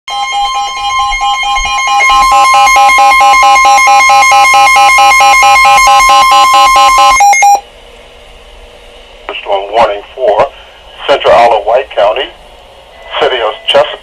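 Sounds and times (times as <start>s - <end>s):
rapidly pulsing lower tone: 0.1s - 4.3s
steady alert tone: 0.1s - 7.6s.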